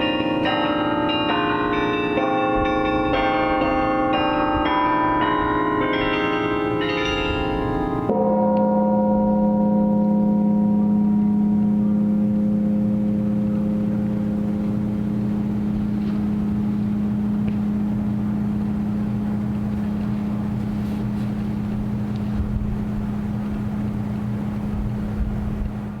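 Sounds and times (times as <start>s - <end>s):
wind noise on microphone: 0.0s - 8.2s, 14.1s - 26.0s
tower bell ringing: 0.0s - 23.4s.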